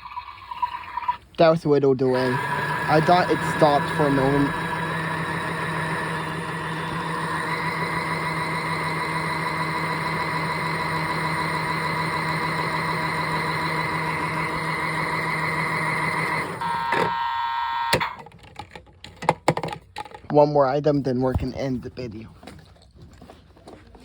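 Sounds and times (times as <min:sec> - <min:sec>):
toy washing machine motor whirring: 0:02.0 - 0:18.2.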